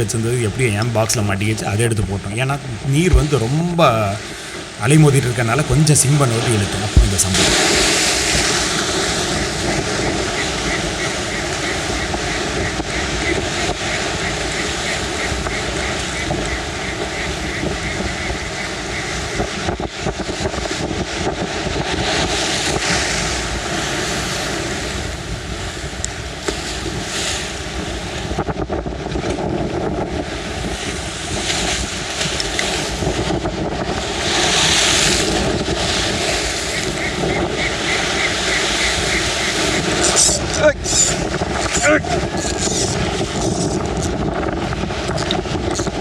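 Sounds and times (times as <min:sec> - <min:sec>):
waves washing in: 0:00.1 - 0:13.0
wind buffeting microphone: 0:26.8 - 0:46.0.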